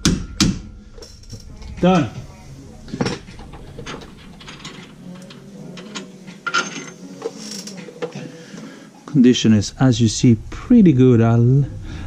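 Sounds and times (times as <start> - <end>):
loud metal knock: 0.0 - 0.7
metal tools clattering: 0.9 - 2.2, 2.9 - 8.3.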